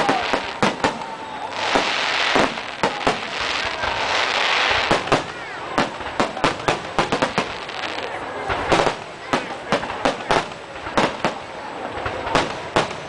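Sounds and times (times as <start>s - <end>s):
fireworks bangs: 0.0s - 13.0s
fireworks hissing crackle: 0.0s - 13.0s.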